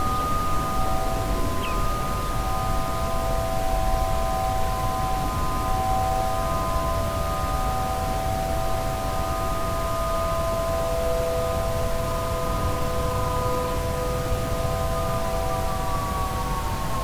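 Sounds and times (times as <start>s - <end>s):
warning sirens sounding held tones: 0.0s - 17.0s.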